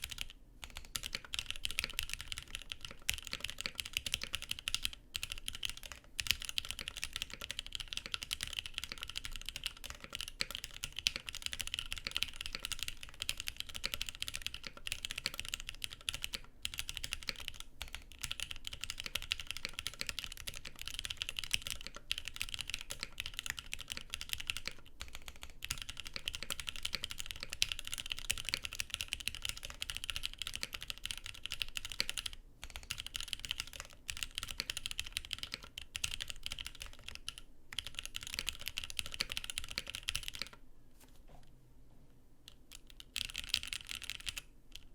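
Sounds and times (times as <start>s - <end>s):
mechanical keyboard typing: 0.0s - 40.6s, 42.5s - 44.9s.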